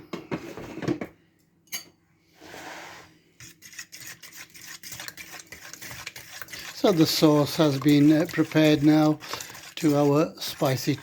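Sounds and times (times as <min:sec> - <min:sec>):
utensil scraping bowl: 0:02.4 - 0:11.0.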